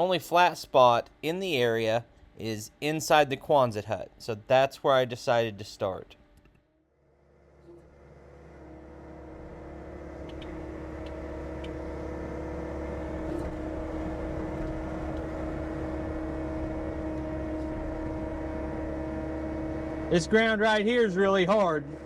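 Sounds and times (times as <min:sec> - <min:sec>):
diesel engine droning: 0:07.1 - 0:22.0.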